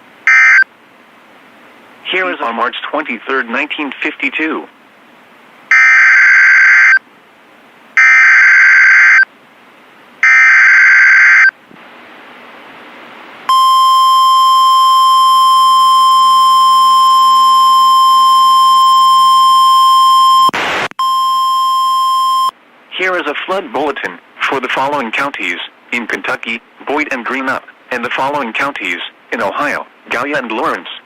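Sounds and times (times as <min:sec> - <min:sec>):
steady warning alarm tone: 0:00.3 - 0:00.6, 0:05.7 - 0:07.0, 0:08.0 - 0:09.2, 0:10.2 - 0:11.5
static crackle: 0:20.0 - 0:21.0.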